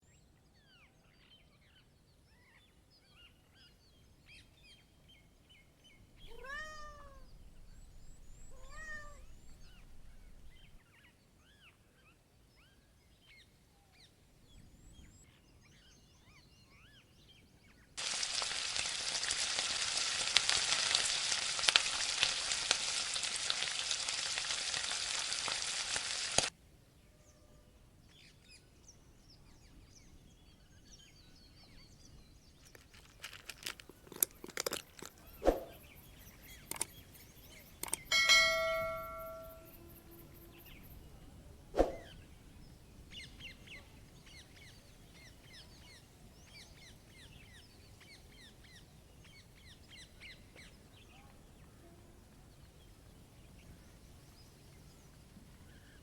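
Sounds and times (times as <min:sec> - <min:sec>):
faint birds chirping: 0:00.0 - 0:18.0, 0:26.9 - 0:56.0
cat meowing: 0:06.3 - 0:07.5, 0:08.4 - 0:09.8
loud steady hiss: 0:18.0 - 0:26.5.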